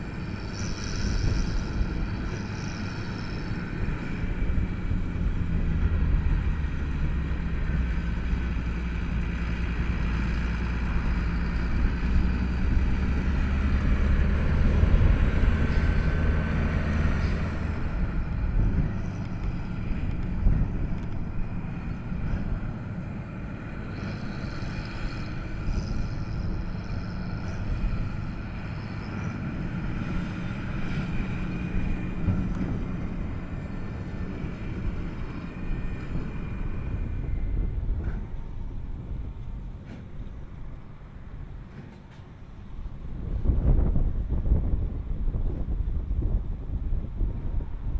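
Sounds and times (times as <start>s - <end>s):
diesel tractor engine running: 0.0s - 47.9s.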